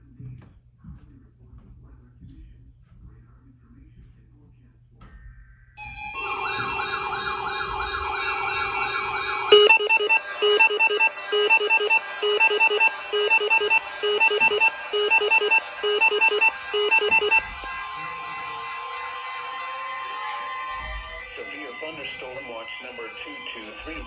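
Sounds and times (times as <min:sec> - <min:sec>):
pulsing beeps: 0:05.8 - 0:24.0
steady alarm tone: 0:05.8 - 0:24.0
warbling siren tone: 0:05.8 - 0:24.0.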